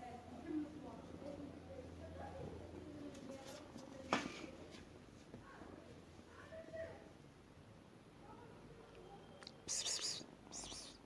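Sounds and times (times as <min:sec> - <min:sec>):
kitten vocalizing faintly: 0:09.4 - 0:11.0.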